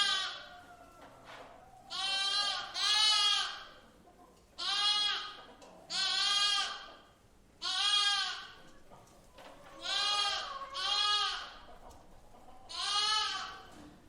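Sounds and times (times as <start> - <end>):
lamb bleating: 0.0 - 0.5, 1.9 - 3.7, 4.6 - 6.9, 7.6 - 8.6, 9.8 - 11.6, 12.7 - 13.7.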